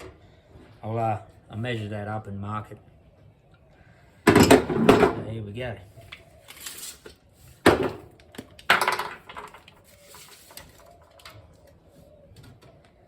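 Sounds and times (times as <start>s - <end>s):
scraping rustle: 6.4s - 7.6s, 9.7s - 11.2s.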